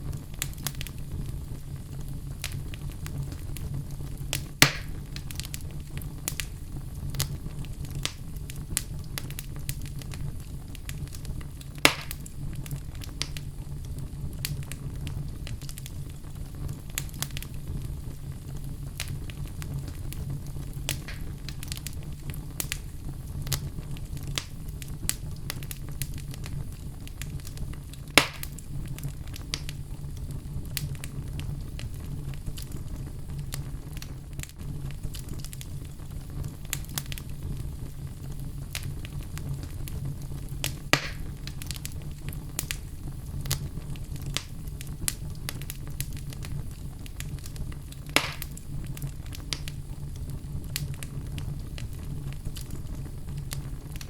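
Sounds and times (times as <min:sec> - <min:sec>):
fire crackling: 0:00.0 - 0:54.0
fire rumbling: 0:00.0 - 0:54.0
logs popping: 0:04.3 - 0:05.6, 0:11.8 - 0:12.3, 0:20.9 - 0:22.0, 0:27.4 - 0:28.6, 0:40.6 - 0:41.9, 0:47.3 - 0:49.8.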